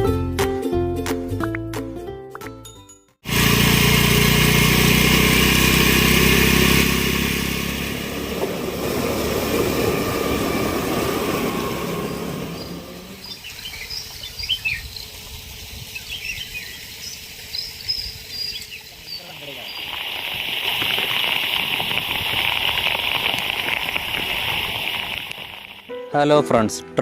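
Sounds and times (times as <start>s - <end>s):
birds chirping: 8.0s - 20.3s.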